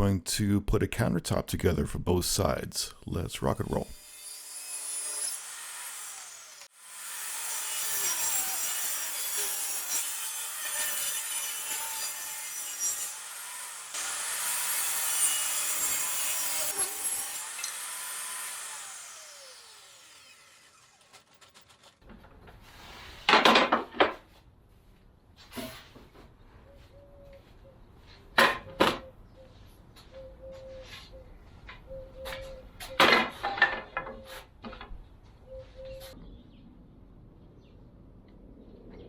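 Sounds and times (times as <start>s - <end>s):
saw cutting through wood: 3.8s - 22.0s.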